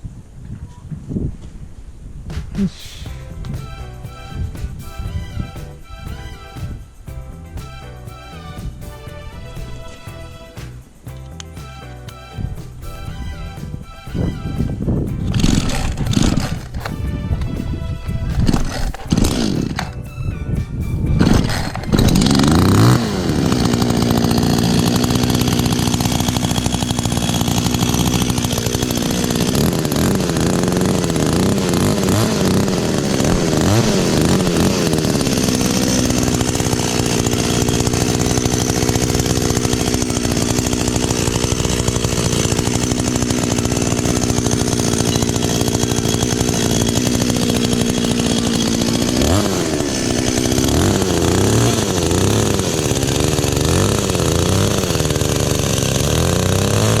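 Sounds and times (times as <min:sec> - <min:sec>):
chainsaw running at high revs: 0:14.1 - 0:19.9, 0:21.2 - 0:57.0.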